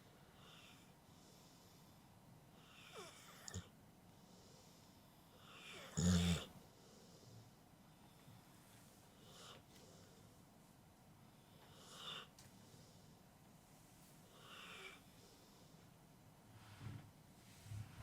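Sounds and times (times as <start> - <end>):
dog snoring: 2.6 - 3.7, 5.4 - 6.5.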